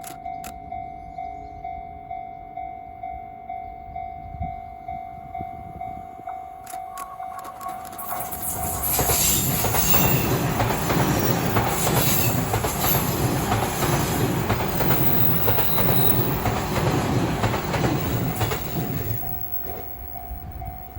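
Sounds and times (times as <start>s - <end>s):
level crossing warning bell: 0.2s - 20.9s
electric train rumbling past: 0.6s - 20.9s
wheels clacking over rail joints: 6.7s - 20.9s.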